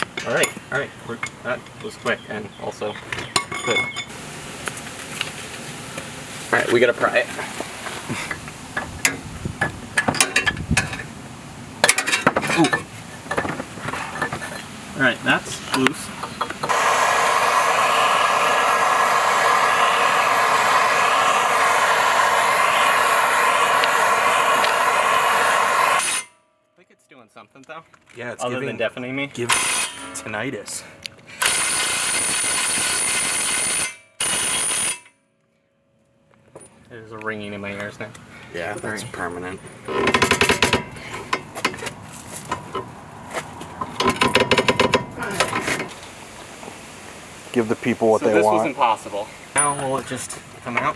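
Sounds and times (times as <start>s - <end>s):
loud power tool running: 16.7s - 26.3s, 29.5s - 30.2s, 31.4s - 35.1s.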